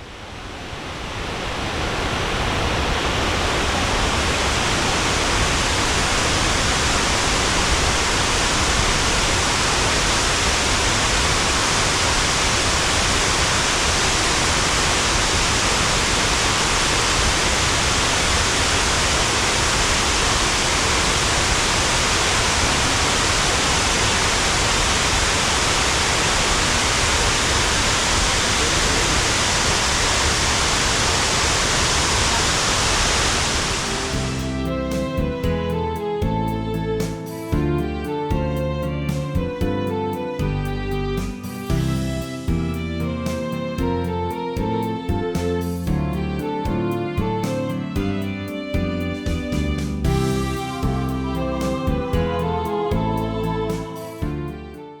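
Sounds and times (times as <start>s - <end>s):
waterfall roar: 0.0s - 34.6s.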